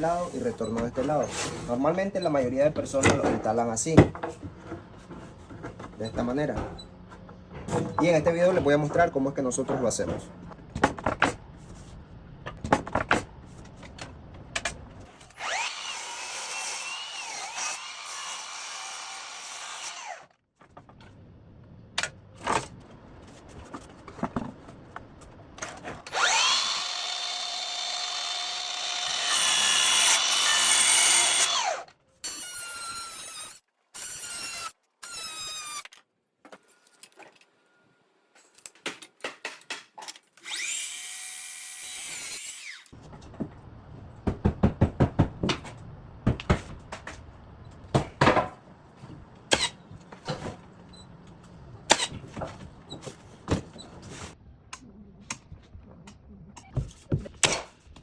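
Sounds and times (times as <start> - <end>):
electric power tool whining: 15.2 - 20.2, 26.1 - 35.9.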